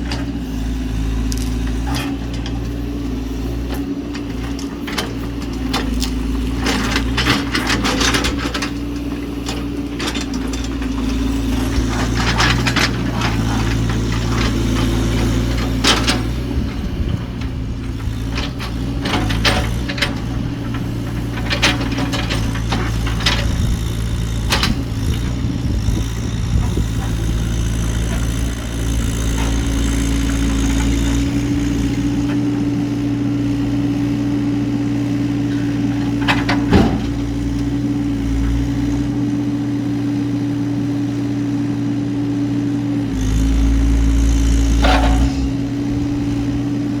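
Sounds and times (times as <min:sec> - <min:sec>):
excavator diesel engine running: 0:00.0 - 0:47.0.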